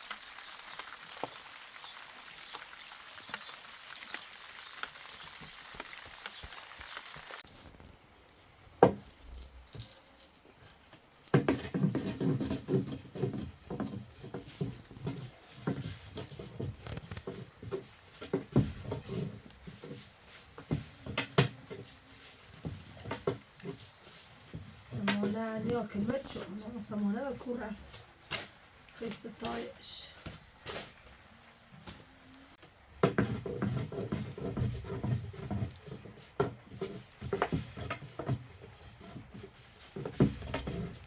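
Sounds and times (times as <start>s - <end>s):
rain pattering: 0.0s - 7.8s.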